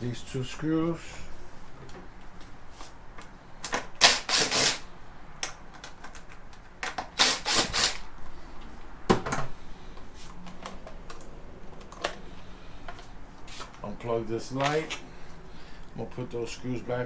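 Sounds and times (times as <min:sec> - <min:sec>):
screwdriver bursts: 0:03.6 - 0:04.9, 0:06.8 - 0:08.1
parts clicking when handled: 0:05.3 - 0:07.2.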